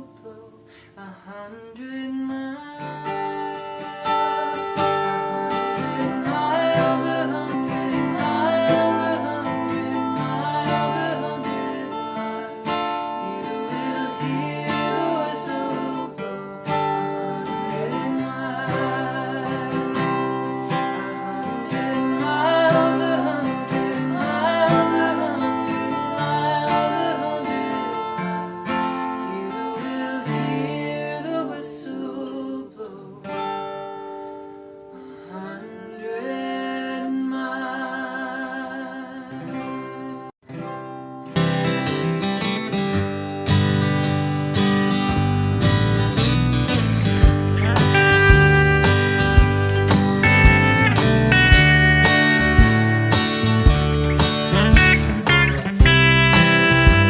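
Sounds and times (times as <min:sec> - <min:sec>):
person singing: 0:00.0 - 0:16.4, 0:17.3 - 0:33.3, 0:47.4 - 0:57.0
acoustic guitar: 0:00.0 - 0:57.0.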